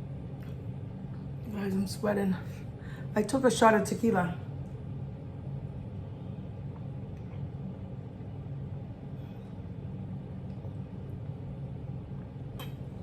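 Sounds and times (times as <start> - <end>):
air conditioner humming: 0.0 - 13.0.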